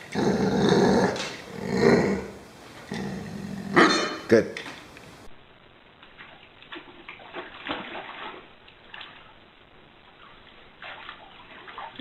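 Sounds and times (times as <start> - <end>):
water splashing and sloshing: 6.0 - 12.0.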